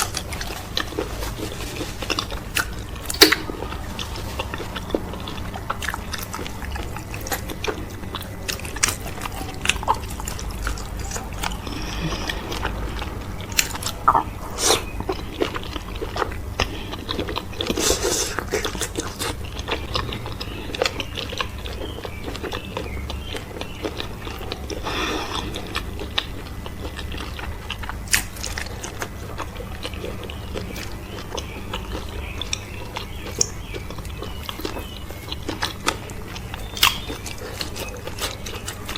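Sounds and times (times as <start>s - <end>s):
close-miked chewing: 0.0s - 38.9s
wet mouth clicks: 3.1s - 3.5s.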